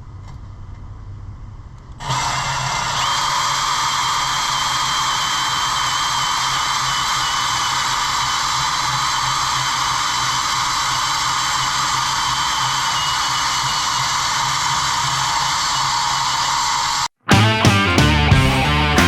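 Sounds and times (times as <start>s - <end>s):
angle grinder cutting steel: 2.0s - 17.1s.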